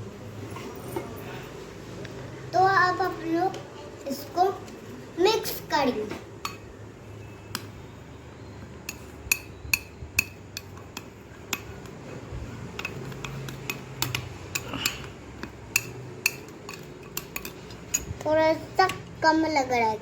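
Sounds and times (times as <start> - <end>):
spoon clinking against bowl: 6.4 - 6.7, 8.8 - 12.0, 12.7 - 18.2.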